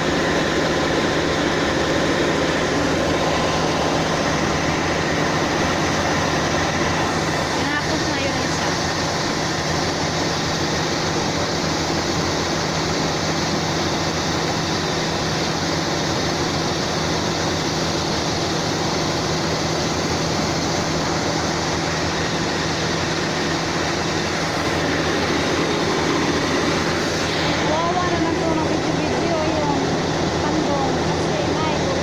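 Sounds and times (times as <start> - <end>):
combine harvester running: 0.0 - 32.0.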